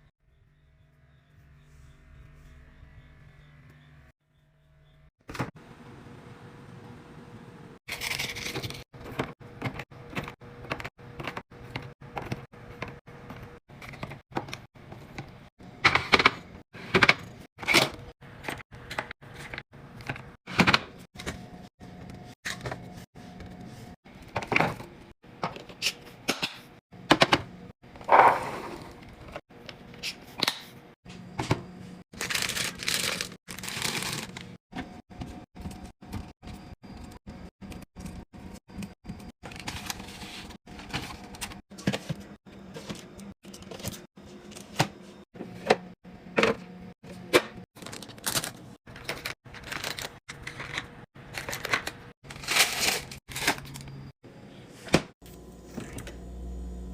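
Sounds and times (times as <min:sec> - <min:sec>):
packaging rustling: 0:32.2 - 0:34.6, 0:47.8 - 0:53.9.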